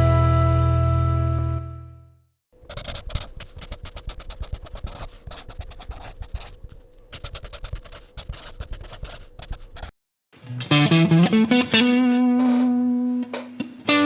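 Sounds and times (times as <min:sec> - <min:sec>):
faint steady hum: 0:02.6 - 0:09.9.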